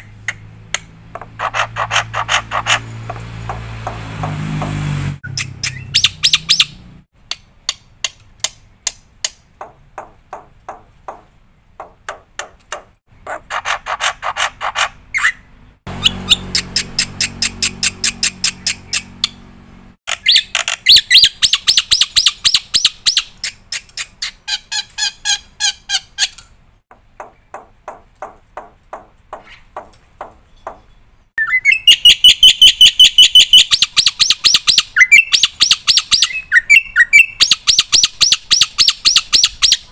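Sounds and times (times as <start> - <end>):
bird singing chirps and ringing notes: 5.2 - 7.0, 14.7 - 23.8, 29.4 - 39.9.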